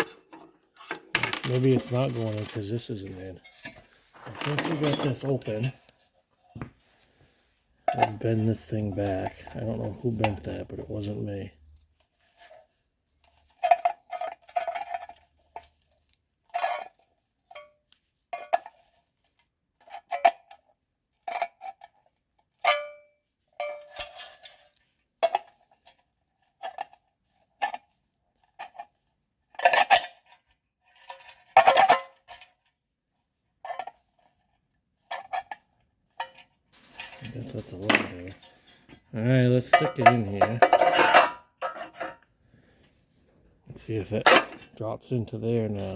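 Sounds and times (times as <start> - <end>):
metallic clanks and scrapes: 0.0 - 6.8, 23.6 - 27.0, 35.1 - 42.3.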